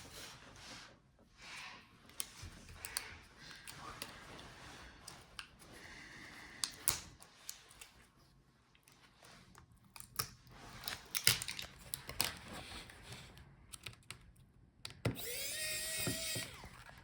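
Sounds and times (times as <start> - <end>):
small motor whirring: 15.2 - 17.0.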